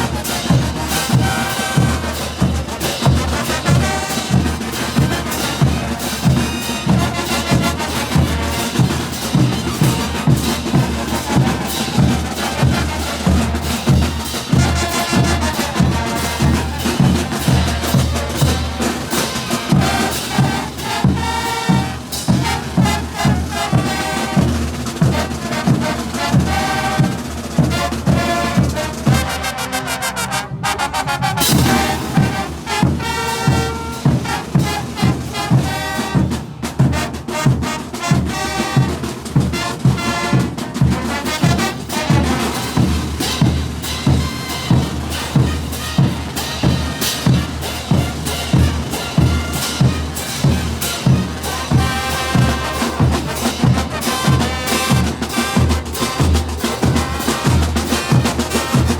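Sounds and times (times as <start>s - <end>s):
heavy bass drum beat: 0.0s - 29.3s, 31.5s - 37.3s, 38.1s - 58.9s
trumpets and trombones melody: 0.0s - 58.9s.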